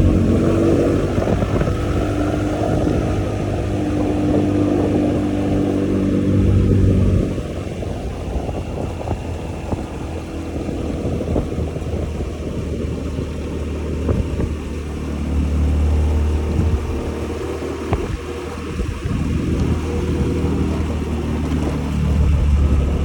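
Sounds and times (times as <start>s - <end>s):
scooter engine running: 0.0s - 23.0s
wind noise on microphone: 0.0s - 23.0s.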